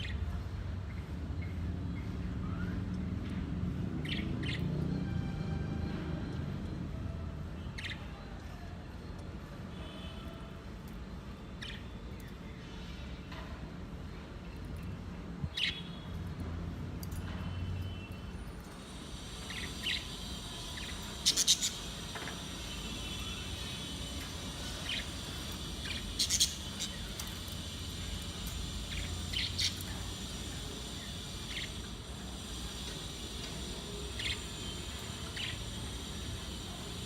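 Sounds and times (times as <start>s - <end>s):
budgerigars chirping and chattering: 19.3s - 37.0s.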